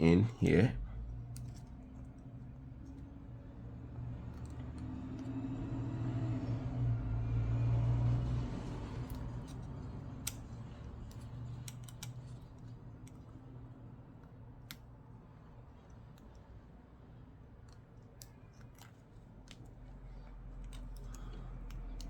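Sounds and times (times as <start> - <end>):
small sharp clicks: 8.5 - 13.4.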